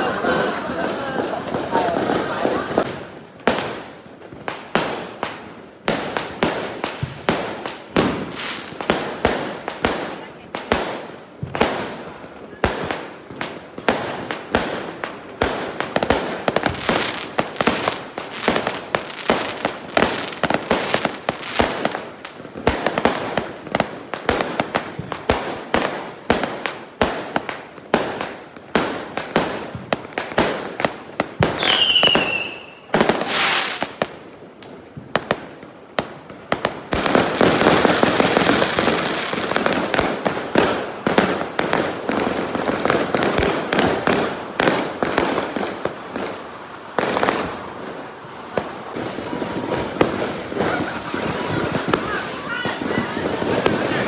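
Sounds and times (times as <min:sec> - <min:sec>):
fireworks cracking and popping: 0:00.0 - 0:54.0
falling firework whistle: 0:31.5 - 0:33.9.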